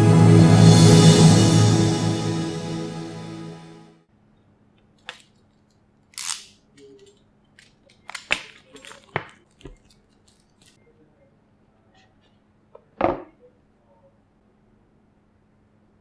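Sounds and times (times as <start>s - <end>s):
small objects clicking and knocking: 6.1s - 10.8s.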